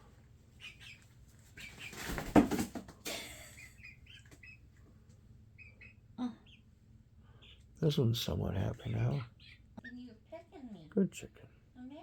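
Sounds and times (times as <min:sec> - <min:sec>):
chicken chirping: 0:00.4 - 0:02.3, 0:03.5 - 0:04.9, 0:05.5 - 0:07.8, 0:08.6 - 0:10.1
chicken wings flapping: 0:01.4 - 0:03.1.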